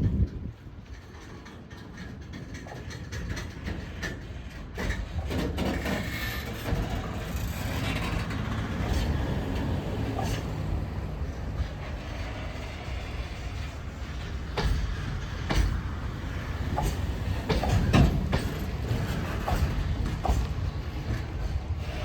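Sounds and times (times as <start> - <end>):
freight train rumble: 0.0 - 22.0
wheels clicking over rail joints: 0.0 - 22.0.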